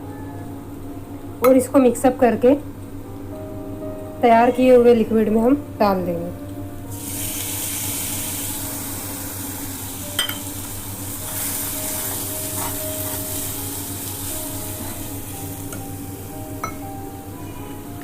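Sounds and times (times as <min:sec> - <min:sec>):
oil sizzling: 0:06.8 - 0:17.4
water poured into hot oil: 0:06.9 - 0:08.5.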